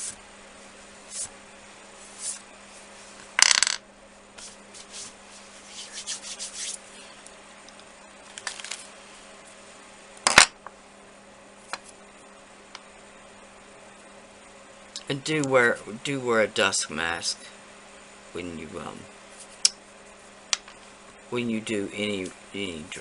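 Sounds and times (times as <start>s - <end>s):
brush rubbing strokes: 4.4s - 6.8s.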